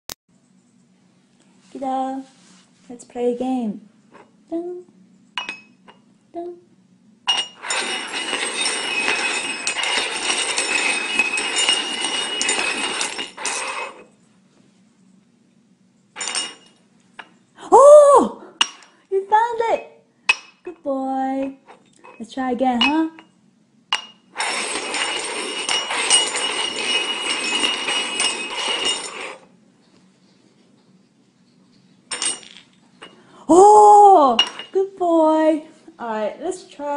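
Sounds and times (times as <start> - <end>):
cups scraping and clinking: 7.3 - 14.2, 16.2 - 17.4, 21.4 - 23.3, 24.0 - 33.3.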